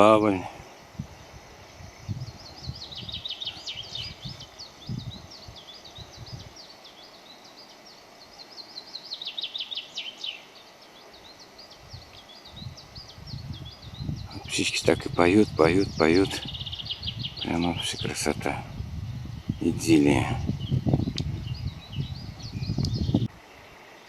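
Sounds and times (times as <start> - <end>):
wind rumble on microphone: 0.0 - 6.6, 11.8 - 23.4
songbirds chirping and trilling: 0.0 - 24.0.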